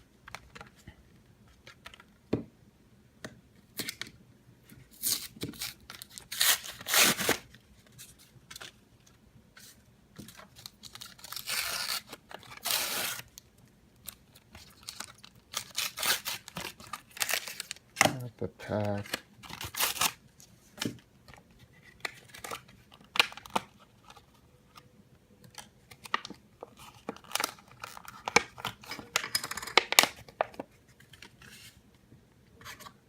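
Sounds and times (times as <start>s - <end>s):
card pack tearing and crinkling: 5.0s - 7.5s, 10.5s - 13.4s, 14.0s - 18.2s, 18.8s - 20.2s, 25.9s - 29.0s.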